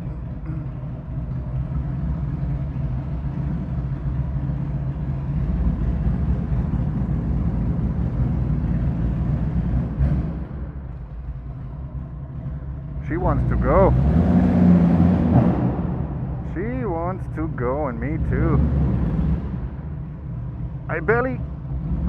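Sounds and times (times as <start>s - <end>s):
motorcycle engine idling: 0.0s - 13.9s.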